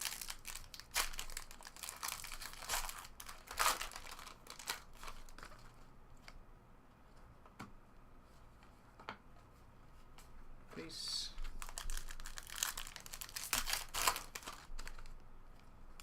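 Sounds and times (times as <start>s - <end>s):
card pack wrappers crinkling: 0.0s - 5.8s, 11.4s - 15.2s.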